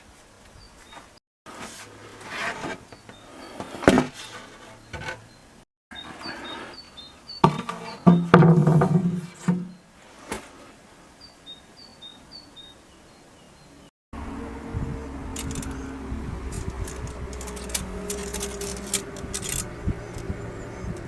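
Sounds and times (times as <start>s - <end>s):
objects clattering and scraping: 1.5s - 5.3s, 7.4s - 10.6s, 16.5s - 20.2s
small birds chirping: 2.8s - 3.8s, 4.8s - 8.2s, 11.2s - 13.9s, 14.9s - 21.0s.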